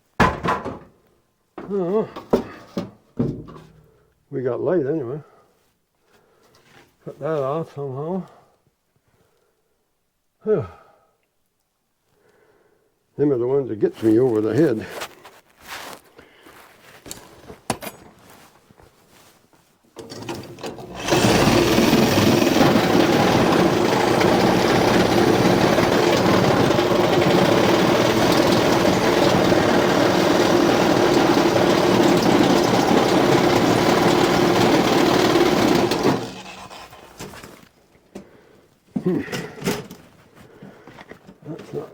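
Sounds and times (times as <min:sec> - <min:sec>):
power saw cutting: 0:20.0 - 0:37.5.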